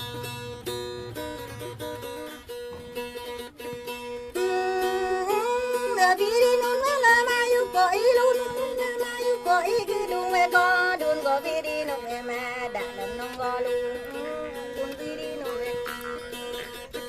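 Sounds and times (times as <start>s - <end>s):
plucked string drone: 0.0s - 17.0s
person singing ornamented melody: 4.4s - 16.8s.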